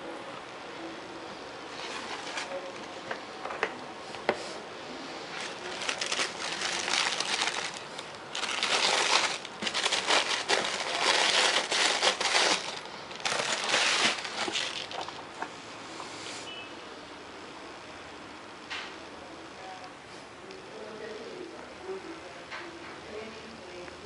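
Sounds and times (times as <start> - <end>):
packaging crinkling: 5.3 - 15.3.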